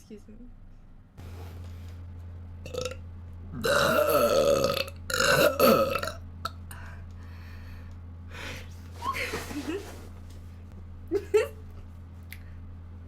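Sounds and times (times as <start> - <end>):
person burping: 2.7 - 3.0, 3.6 - 6.6.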